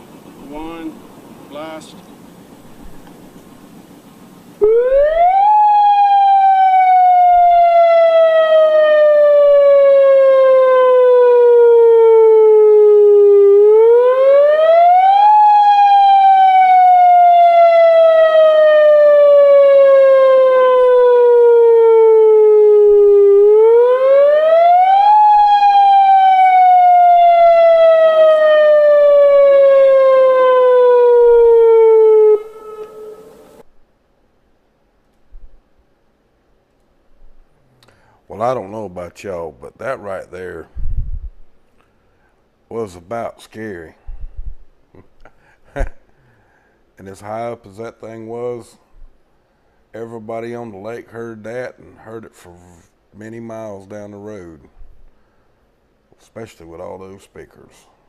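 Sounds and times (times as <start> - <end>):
warning siren sweeping up and down: 4.6 - 33.7.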